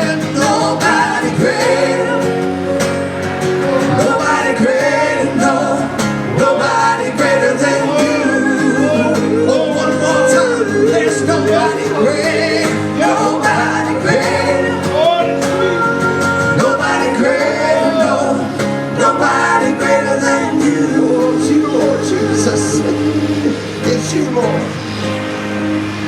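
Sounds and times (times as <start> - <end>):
instrumental accompaniment: 0.0 - 26.0
people singing worship song: 0.0 - 26.0.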